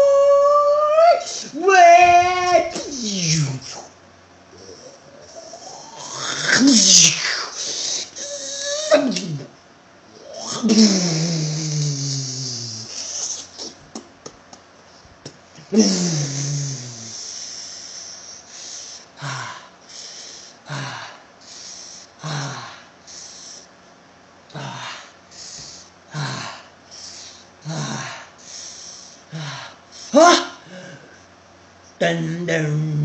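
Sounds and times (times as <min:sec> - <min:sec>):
man grunting: 0:00.0 - 0:03.9, 0:04.6 - 0:07.4, 0:08.2 - 0:09.5, 0:10.2 - 0:12.9, 0:15.7 - 0:17.2, 0:27.6 - 0:28.3
man shouting with a hiss: 0:00.0 - 0:04.0, 0:04.8 - 0:09.5, 0:10.2 - 0:13.2, 0:15.7 - 0:17.7, 0:27.6 - 0:30.8
hissing breaths: 0:02.9 - 0:09.2, 0:14.9 - 0:23.8, 0:24.5 - 0:31.3.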